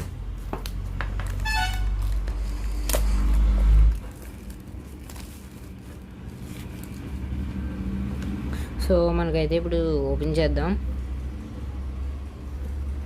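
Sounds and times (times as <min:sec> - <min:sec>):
package crackling and scraping: 0:00.0 - 0:07.5.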